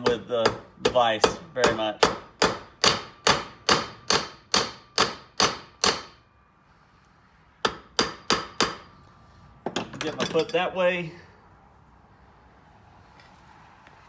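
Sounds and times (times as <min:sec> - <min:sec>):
hammer striking copper tubing: 0:00.0 - 0:06.2, 0:07.6 - 0:08.9.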